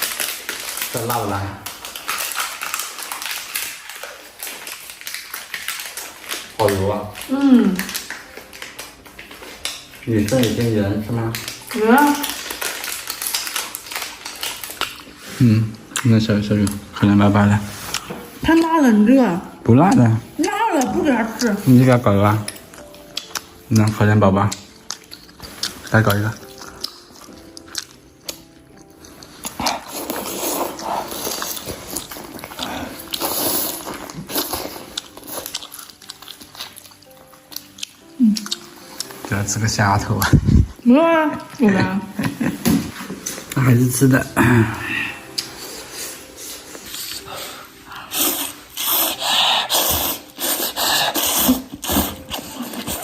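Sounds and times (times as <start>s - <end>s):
dog chewing food crunching: 0.0s - 18.7s, 19.6s - 40.6s
slurping noodles: 29.6s - 35.0s, 46.2s - 53.0s.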